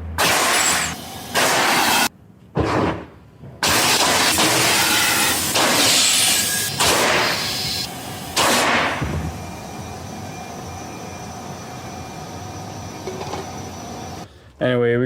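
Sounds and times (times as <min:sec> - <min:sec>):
compressed air blasts: 0:00.0 - 0:02.1, 0:03.6 - 0:09.4.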